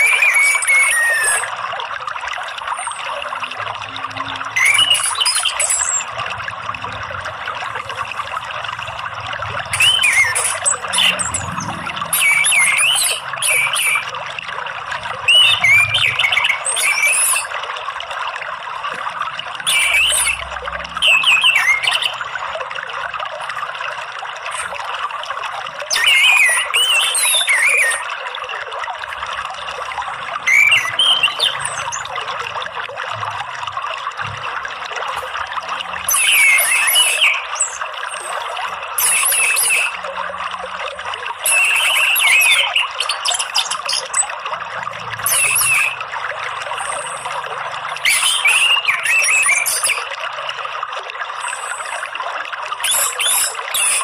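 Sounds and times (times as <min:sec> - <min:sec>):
thrush singing whistled phrases: 0:00.0 - 0:01.6, 0:02.6 - 0:06.2, 0:09.6 - 0:14.2, 0:15.2 - 0:17.6, 0:19.6 - 0:22.6, 0:25.8 - 0:28.2, 0:29.1 - 0:32.5, 0:36.0 - 0:40.2, 0:41.3 - 0:44.4, 0:45.1 - 0:50.1, 0:51.4 - 0:54.0
flowing water: 0:00.0 - 0:54.0.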